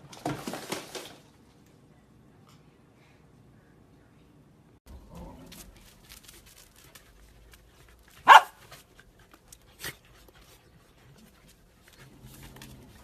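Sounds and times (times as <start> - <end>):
dog barking: 8.2 - 8.6.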